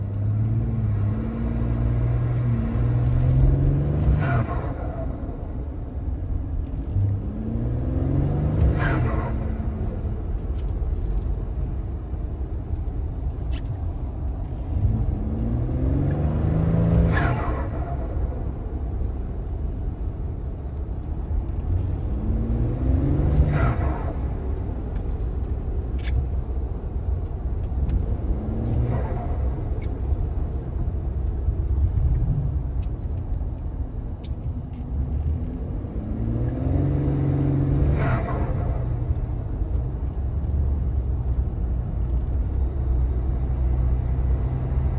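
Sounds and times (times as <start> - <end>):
car engine accelerating hard: 12.7 - 19.3, 21.5 - 26.1, 27.0 - 44.9.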